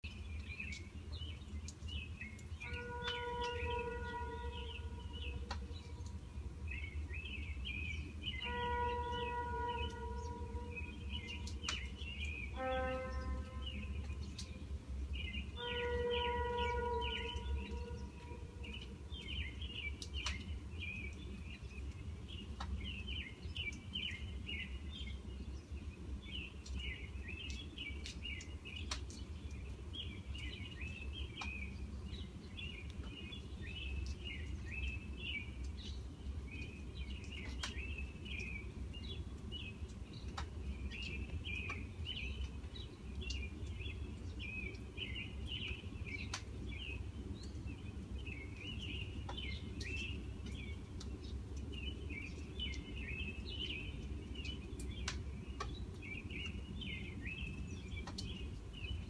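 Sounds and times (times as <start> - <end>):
birds chirping: 0.0 - 59.0
distant trains rumbling: 2.4 - 7.2, 8.1 - 20.6.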